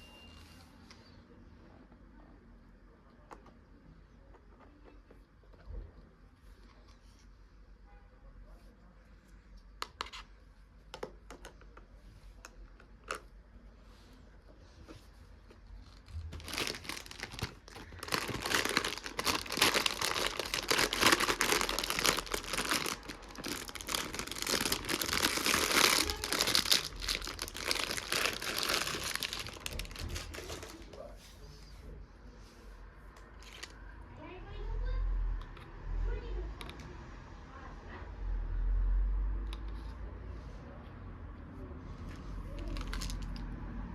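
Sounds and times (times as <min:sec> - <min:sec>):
wrapping crinkling and crumpling: 0:15.4 - 0:31.2, 0:33.3 - 0:33.8, 0:42.5 - 0:43.4.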